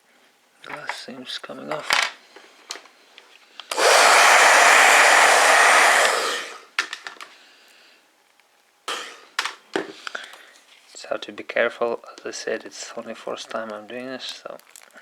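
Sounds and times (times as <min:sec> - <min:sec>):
hot-air blower rushing: 0:03.7 - 0:06.7, 0:08.9 - 0:09.4.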